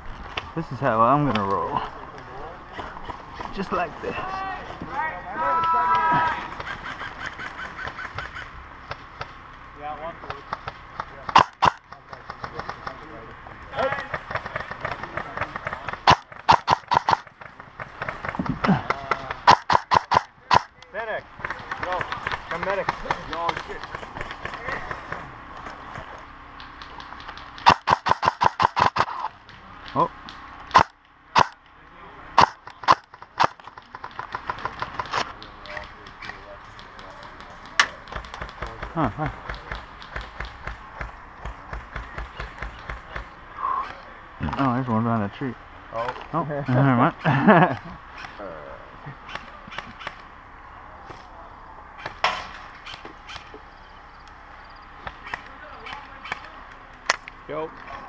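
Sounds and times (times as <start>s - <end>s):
airsoft guns firing: 10.5s - 12.9s, 13.9s - 18.4s, 19.3s - 20.7s, 26.8s - 29.3s, 30.7s - 31.6s, 32.4s - 35.2s
airsoft gun shots: 11.3s - 11.8s, 16.0s - 17.3s, 19.4s - 20.7s, 27.6s - 29.3s, 30.7s - 31.6s, 32.4s - 33.6s.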